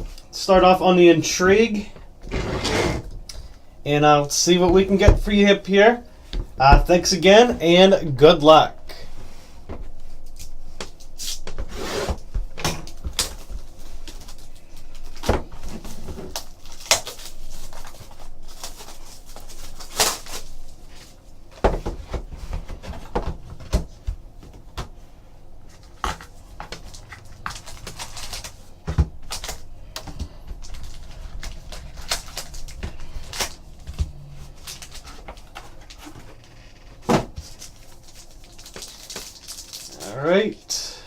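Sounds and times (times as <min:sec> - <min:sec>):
rustling and tearing wrappers: 0:12.8 - 0:21.2, 0:25.6 - 0:40.2.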